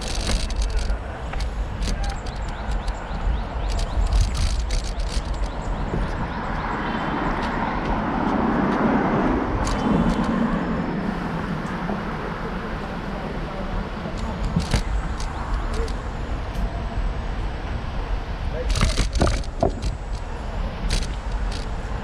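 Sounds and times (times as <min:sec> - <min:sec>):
road traffic: 0:00.0 - 0:22.0
vehicle passing close by: 0:02.3 - 0:14.1.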